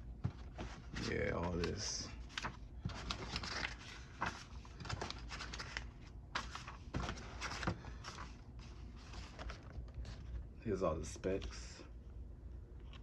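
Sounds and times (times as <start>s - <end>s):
cardboard and paper rustling: 0.2s - 10.5s.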